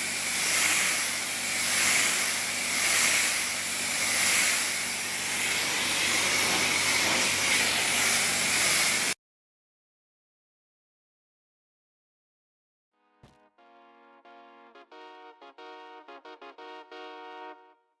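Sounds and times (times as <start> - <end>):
high-pressure water spray hissing: 0.0 - 9.2.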